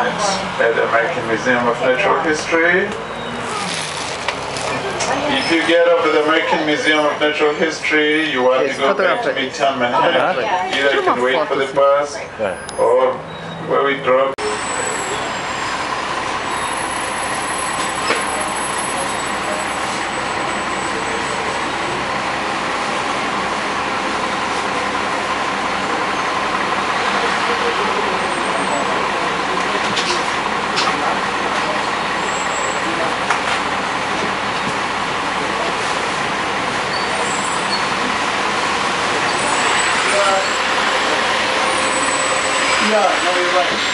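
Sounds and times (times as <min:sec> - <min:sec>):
bus driving through city traffic: 0:00.0 - 0:43.9.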